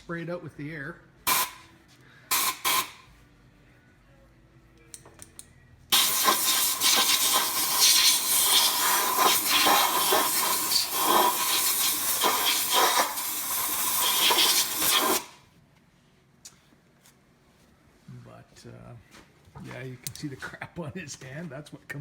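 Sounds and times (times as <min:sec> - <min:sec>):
air blow gun hissing: 0:01.3 - 0:01.6, 0:02.3 - 0:03.1, 0:05.9 - 0:15.4.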